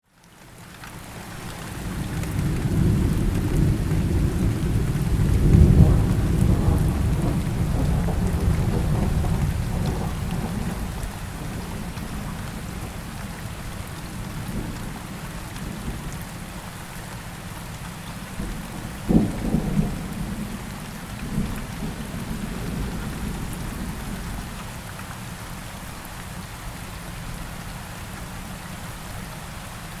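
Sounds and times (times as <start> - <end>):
heavy rain: 0.0 - 30.0
low thunder rumble: 1.8 - 13.1, 18.4 - 24.6.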